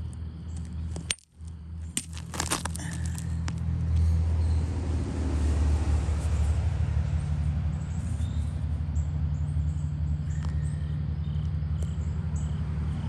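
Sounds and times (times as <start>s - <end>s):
insects chirping: 0.0s - 3.7s, 7.7s - 13.0s.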